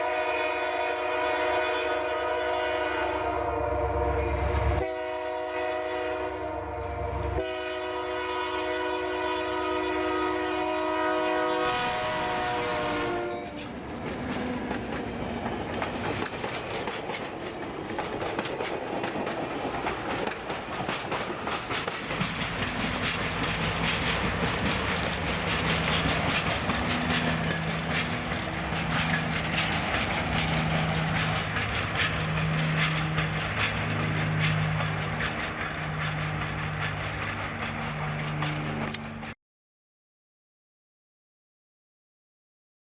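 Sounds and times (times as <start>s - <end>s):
locomotive air horn chord: 0.0s - 13.8s
train wheels clicking over rail joints: 12.1s - 39.4s.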